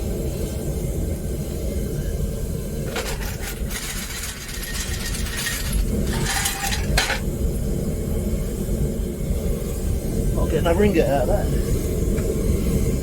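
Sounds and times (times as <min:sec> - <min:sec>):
furnace burner rumbling: 0:00.0 - 0:13.0
scrap copper pieces clattering: 0:02.8 - 0:07.3.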